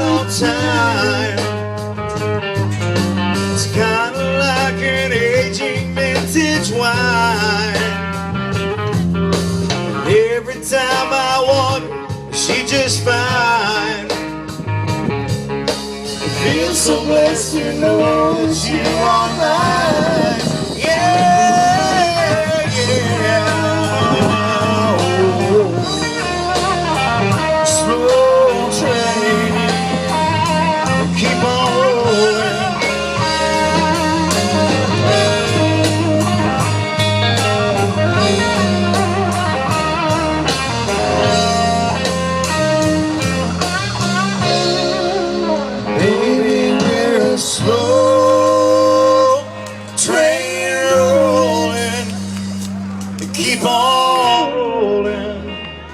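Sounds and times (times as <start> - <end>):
lead guitar solo: 0.0 - 5.8, 13.3 - 55.9
bass and steady drums: 0.0 - 54.1.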